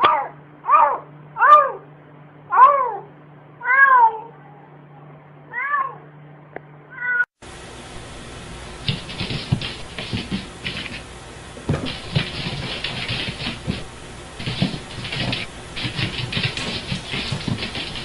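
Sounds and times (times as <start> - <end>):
cat meowing: 2.5 - 4.4, 5.5 - 6.0, 6.9 - 7.3.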